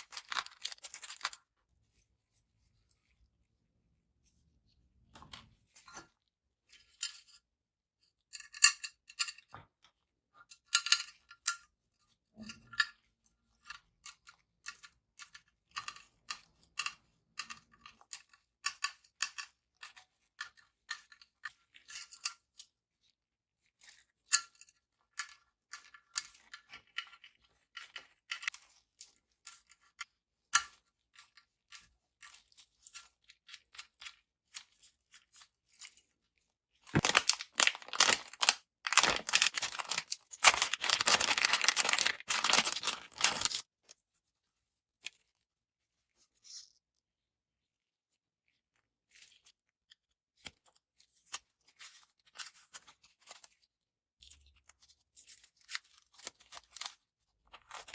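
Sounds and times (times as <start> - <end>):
small parts clicking and tapping: 12.4 - 22.6, 36.9 - 43.7.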